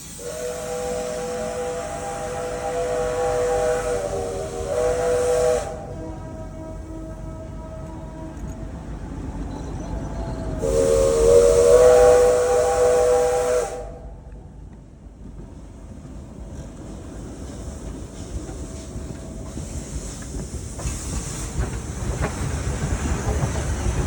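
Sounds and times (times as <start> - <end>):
steam hiss: 0.0 - 6.0, 10.6 - 14.0, 17.3 - 24.0
steam whistle chord: 0.0 - 8.4, 10.6 - 14.3
train rumbling: 0.0 - 24.0.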